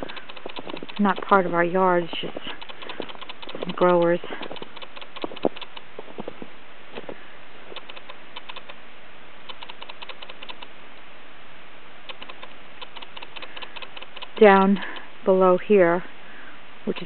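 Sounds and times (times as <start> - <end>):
footsteps crunching in snow: 0.0 - 7.8.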